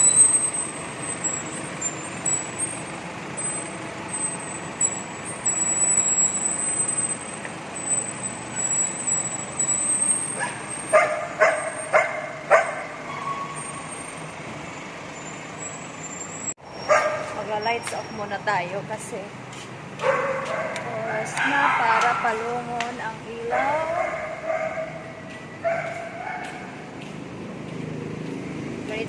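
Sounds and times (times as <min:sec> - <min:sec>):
vehicle rumble: 0:00.0 - 0:29.0
dog barking: 0:10.4 - 0:12.9, 0:16.9 - 0:17.3, 0:20.0 - 0:22.4, 0:23.5 - 0:25.0, 0:25.6 - 0:26.7.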